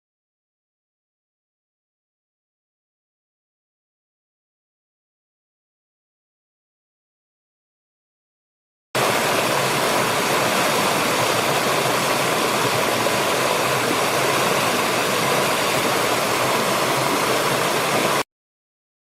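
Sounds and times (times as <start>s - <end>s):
waterfall rushing water: 9.0s - 18.2s.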